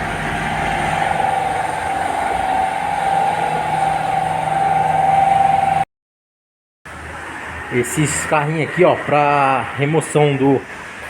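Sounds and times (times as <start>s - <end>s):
machine whining: 0.0s - 5.9s.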